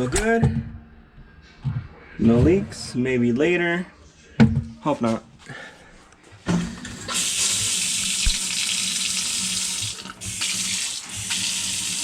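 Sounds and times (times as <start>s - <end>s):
water running into sink: 6.5s - 12.0s.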